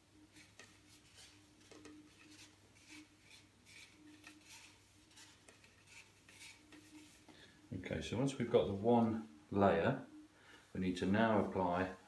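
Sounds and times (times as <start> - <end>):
low steady hum: 0.0 - 12.0
fingers rubbing cloth: 0.3 - 7.3.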